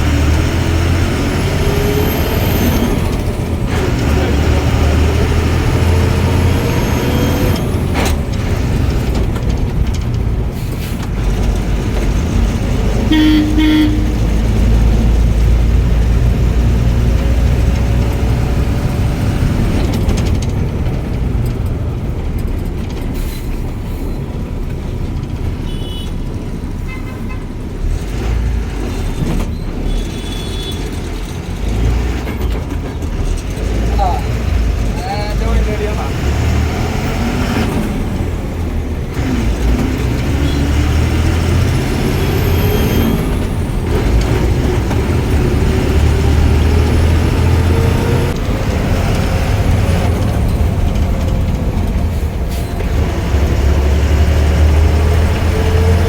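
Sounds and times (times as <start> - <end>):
bus engine and road rumble: 0.0 - 56.0
bus horn toot: 12.9 - 14.6, 25.6 - 27.6, 29.8 - 31.0, 40.4 - 40.8.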